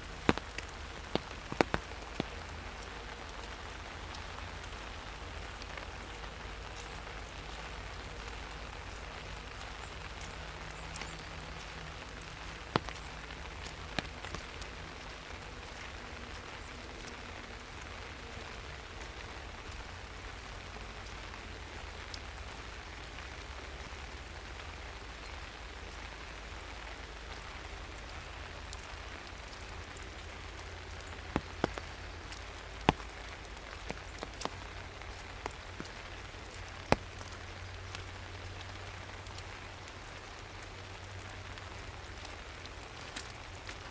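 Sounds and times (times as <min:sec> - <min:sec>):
rain falling through forest: 0:00.0 - 0:43.9
sharp close taps: 0:00.2 - 0:02.4.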